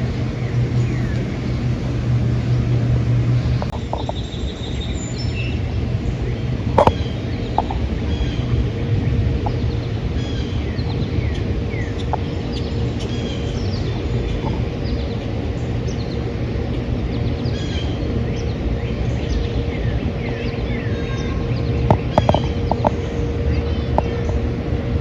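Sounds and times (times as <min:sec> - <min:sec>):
low rumble: 0:00.0 - 0:25.0
songbirds chirping: 0:00.0 - 0:25.0.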